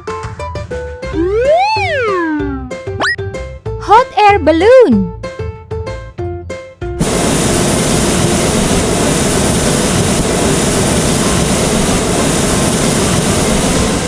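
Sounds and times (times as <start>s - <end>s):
propane burner hissing blast: 7.0s - 14.0s.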